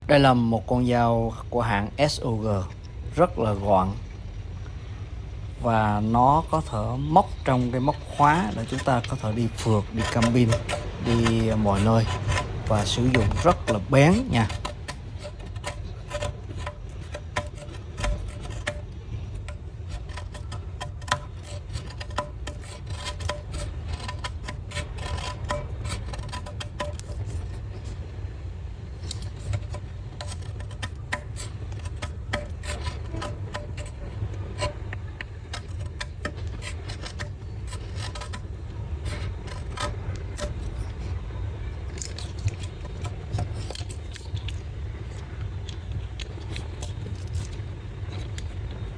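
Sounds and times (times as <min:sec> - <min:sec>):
metallic rubbing: 0:05.5 - 0:48.9.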